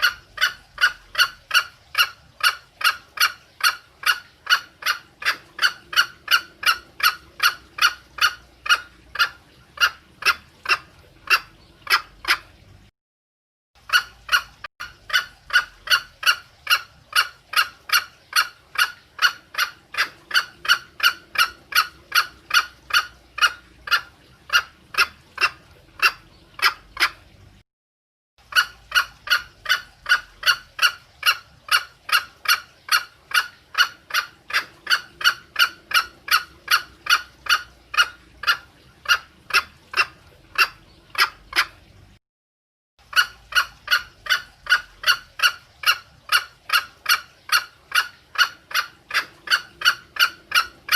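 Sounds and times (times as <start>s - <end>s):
hen clucking: 0.0s - 12.6s, 13.9s - 27.3s, 28.5s - 41.8s, 43.1s - 50.9s.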